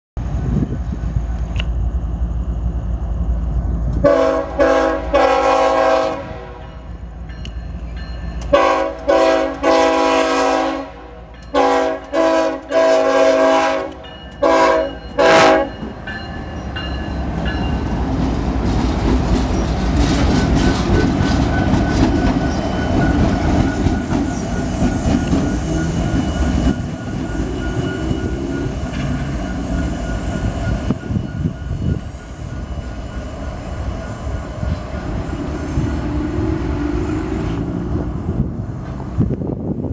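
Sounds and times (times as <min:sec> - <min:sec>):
train rolling past: 0:00.2 - 0:39.9
train air horn blasts: 0:04.0 - 0:06.8, 0:08.5 - 0:15.9
wheel clickety-clack: 0:17.3 - 0:32.2.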